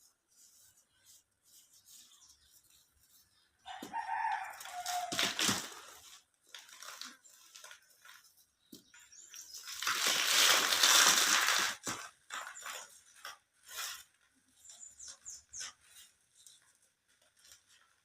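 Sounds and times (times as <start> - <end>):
cement cubes crunching and crumbling: 9.2 - 14.1.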